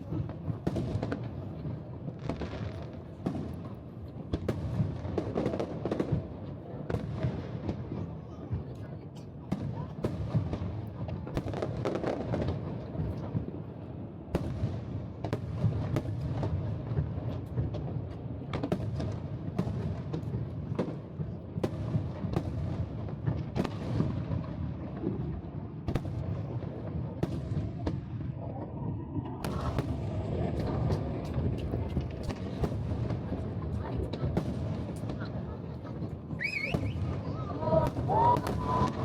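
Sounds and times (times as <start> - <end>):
fireworks bursting: 18.5 - 39.0.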